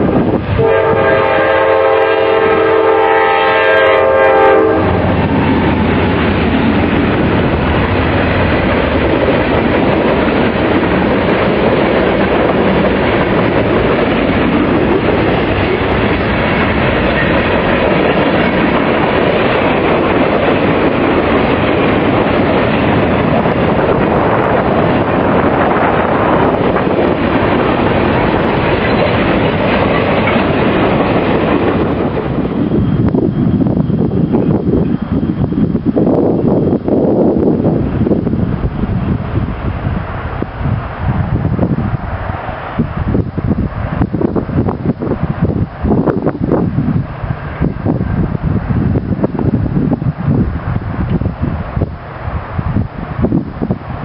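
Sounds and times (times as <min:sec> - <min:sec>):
train wheels on rails: 0:00.0 - 0:54.0
wind hitting microphone: 0:00.0 - 0:54.0
locomotive horn: 0:00.6 - 0:05.0.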